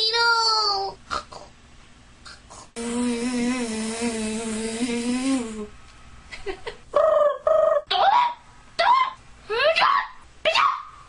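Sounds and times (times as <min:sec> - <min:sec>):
woman humming a buzzing tone: 0:02.3 - 0:05.8.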